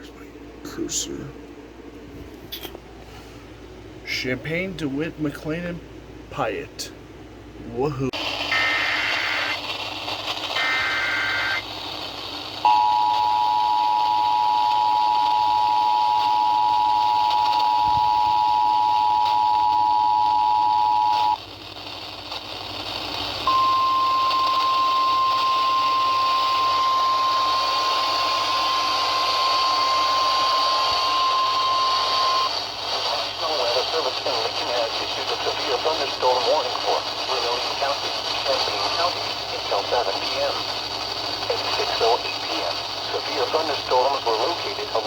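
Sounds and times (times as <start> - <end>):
radio static hiss: 4.0 - 5.8, 7.6 - 45.0
data burst: 8.4 - 9.7, 10.4 - 11.6, 23.5 - 32.5
steady warning tone: 10.6 - 11.6, 12.6 - 21.4, 23.4 - 32.5.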